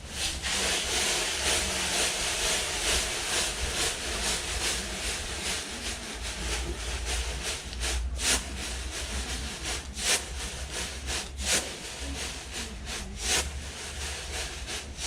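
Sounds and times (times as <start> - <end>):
hand mill rasping grain: 0.0 - 15.0.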